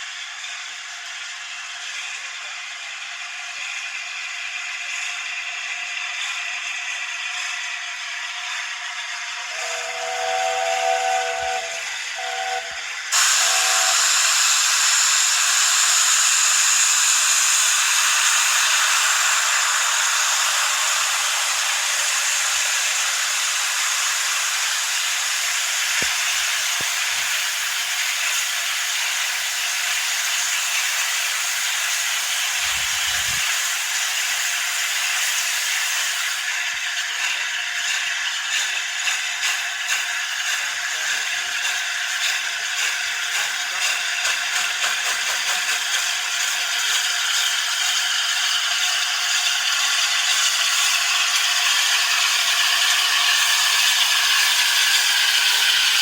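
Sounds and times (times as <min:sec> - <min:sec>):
steam hissing: 0:06.9 - 0:56.0
steam locomotive whistle blasts: 0:09.4 - 0:28.3.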